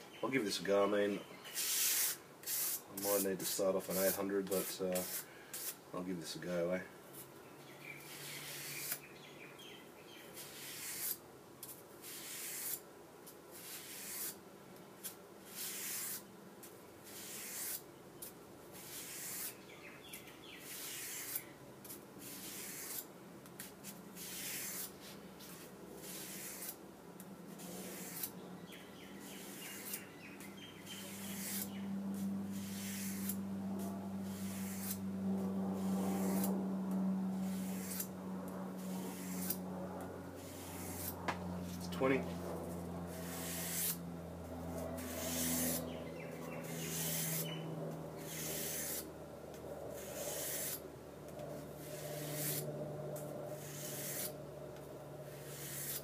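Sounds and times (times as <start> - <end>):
knife blade scraping on sandpaper: 0.6 - 5.8, 8.0 - 9.1, 10.3 - 12.8, 13.5 - 14.4, 15.0 - 16.3, 17.0 - 19.6, 20.2 - 26.8, 27.5 - 28.4, 29.2 - 35.0, 35.8 - 36.6, 37.4 - 38.1, 38.8 - 39.6, 40.4 - 42.2, 43.1 - 44.0, 45.0 - 49.1, 49.9 - 50.8, 51.5 - 52.8, 53.5 - 54.4, 55.3 - 56.0
low steady hum: 16.2 - 56.0.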